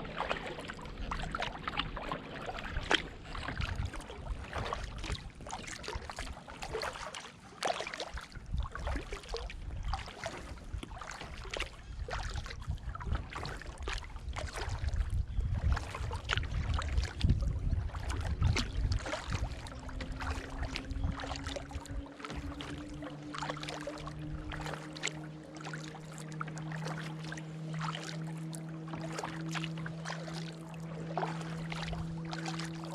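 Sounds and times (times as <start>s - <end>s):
paddle splashing in water: 0.0s - 32.9s
water lapping against hull: 0.0s - 32.9s
steady low hum: 16.4s - 32.9s.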